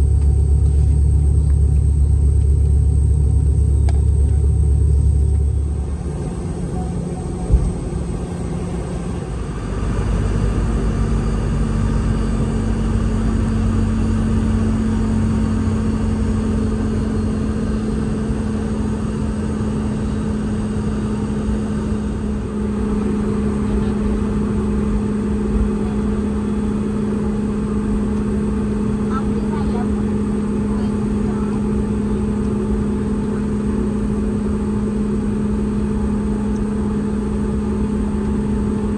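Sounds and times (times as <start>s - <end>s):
jet engines rumbling: 0.0s - 38.9s.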